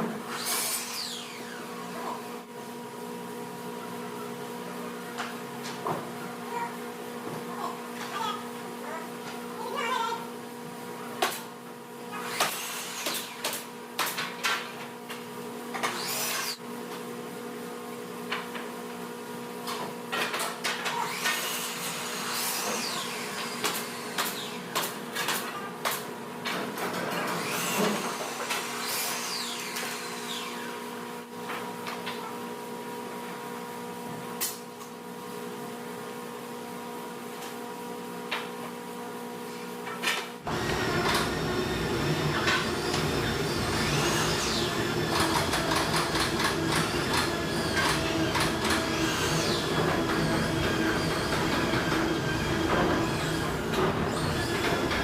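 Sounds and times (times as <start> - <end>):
machine hum: 40.4 - 55.0.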